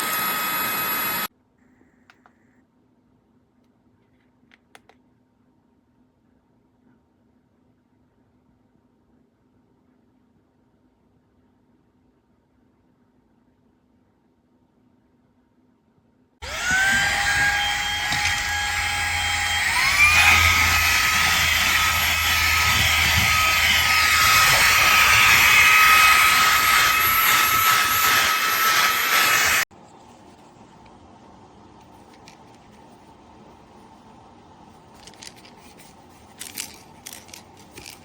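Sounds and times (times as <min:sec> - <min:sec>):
handheld vacuum motor whine: 0:00.0 - 0:01.3, 0:16.4 - 0:29.7.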